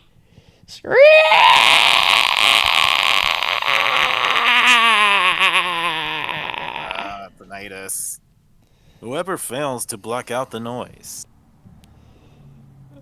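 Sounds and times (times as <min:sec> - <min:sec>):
person shrieking a wail: 0:00.8 - 0:07.3.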